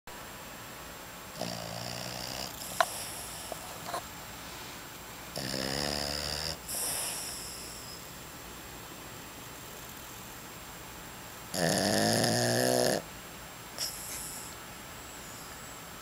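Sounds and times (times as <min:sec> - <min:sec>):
dog snoring: 0:01.4 - 0:04.0, 0:05.3 - 0:08.0, 0:11.5 - 0:13.1, 0:13.8 - 0:14.6
breathy hiss: 0:01.4 - 0:08.1, 0:13.8 - 0:15.9.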